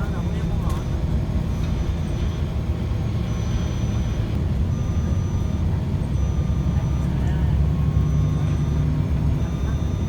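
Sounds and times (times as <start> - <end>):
road vehicle rumbling: 0.0 - 10.0.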